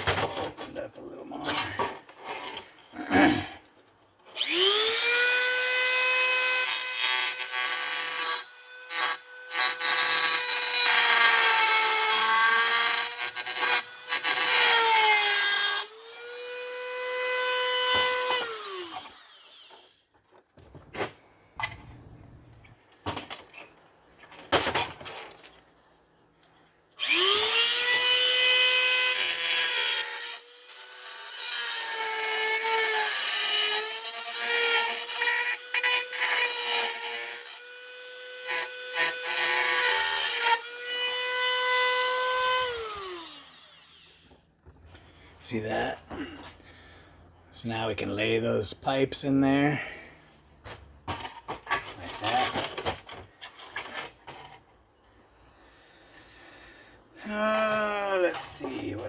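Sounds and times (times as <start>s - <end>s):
die grinder grinding metal: 4.4s - 20.0s, 27.0s - 44.4s.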